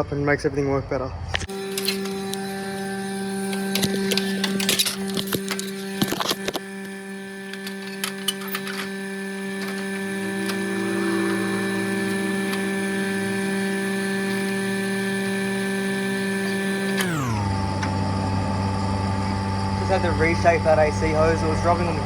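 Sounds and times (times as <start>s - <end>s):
sharp clicks of tools: 1.4s - 17.9s
vacuum pump humming: 1.4s - 22.0s.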